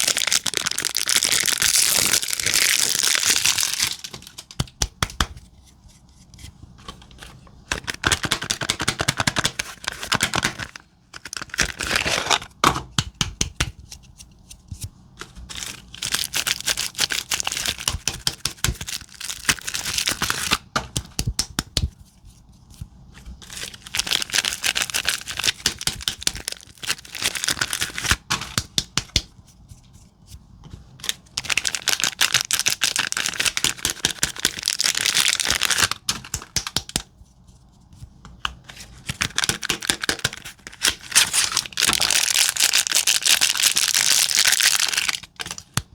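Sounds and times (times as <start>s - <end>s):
wrappers rustling and crackling: 0.0s - 4.6s, 23.4s - 28.3s, 31.0s - 36.0s, 39.2s - 45.2s.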